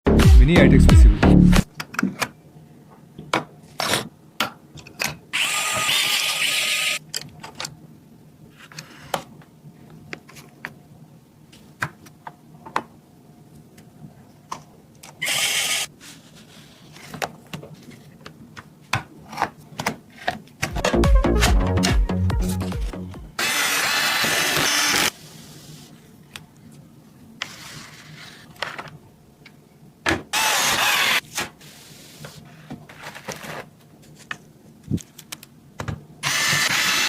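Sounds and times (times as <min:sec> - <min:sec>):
electric screwdriver running: 0:23.4 - 0:25.1, 0:30.4 - 0:31.2, 0:36.2 - 0:37.0.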